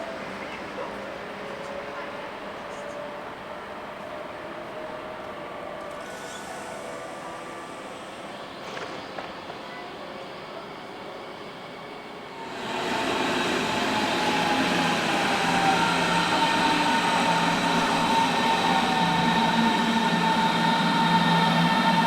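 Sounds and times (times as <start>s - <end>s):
electric train motor whine: 12.3s - 22.0s
train wheels rumbling: 12.4s - 22.0s.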